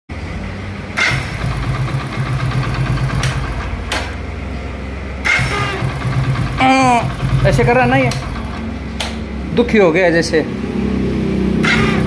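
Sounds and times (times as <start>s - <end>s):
motorcycle engine running: 0.2s - 12.0s
harsh electric starter noise: 1.0s - 4.3s, 5.2s - 9.3s
sharp clicks: 3.1s - 4.2s, 8.0s - 9.2s.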